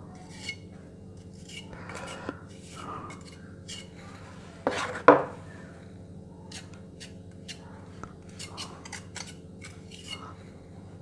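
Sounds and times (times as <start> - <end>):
metal tool scraping putty: 1.2 - 4.0, 8.3 - 10.2.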